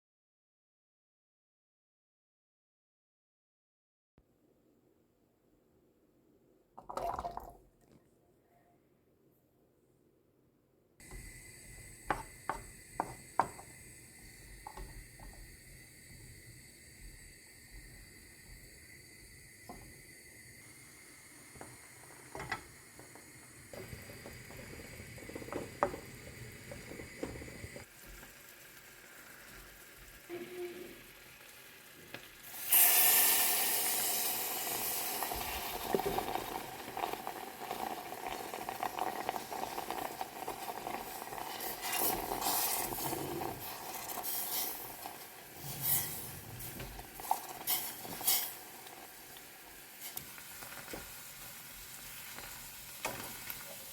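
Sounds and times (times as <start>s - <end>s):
food sizzling in hot pan: 11.0s - 53.9s.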